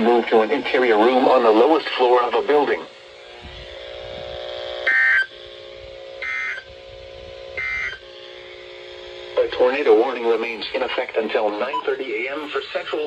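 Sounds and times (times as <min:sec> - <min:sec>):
steady humming tone: 0:00.0 - 0:13.0
warbling digital data tones: 0:04.9 - 0:05.3, 0:07.6 - 0:08.0.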